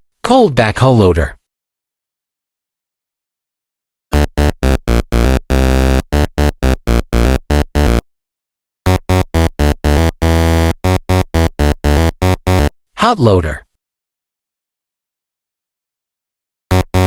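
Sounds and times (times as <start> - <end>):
bouncy synthesizer tune: 4.1 - 8.0, 8.9 - 12.7, 16.7 - 17.0.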